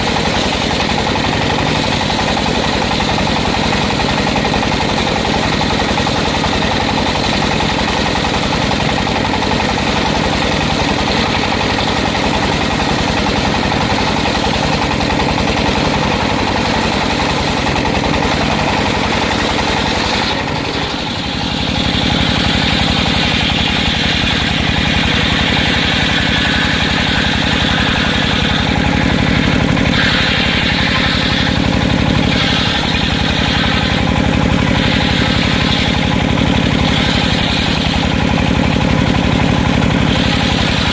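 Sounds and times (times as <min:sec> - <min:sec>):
circular sawmill running: 0:00.0 - 0:40.9
drive engine running: 0:00.0 - 0:40.9.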